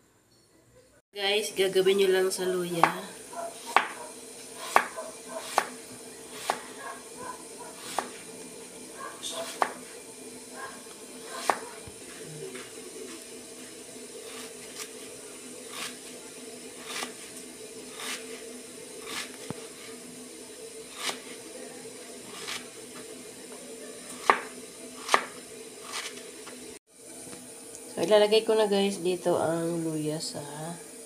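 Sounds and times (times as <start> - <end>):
steady low hum: 0.1 - 31.0
knife chopping ginger: 3.7 - 4.0, 4.6 - 6.8, 7.8 - 8.2, 9.3 - 9.9, 11.4 - 11.8, 16.8 - 17.2, 20.9 - 21.4, 24.2 - 26.2.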